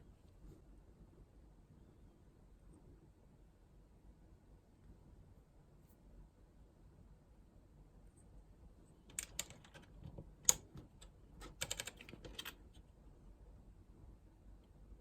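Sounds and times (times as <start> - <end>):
keyboard keys clicking: 9.1 - 12.6.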